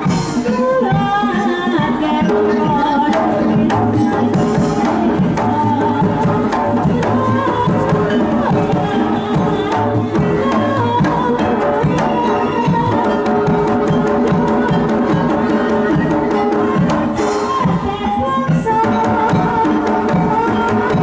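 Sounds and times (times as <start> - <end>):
hand drums busy rhythm: 0.0 - 21.0
wavering ornamented melody: 7.0 - 21.0.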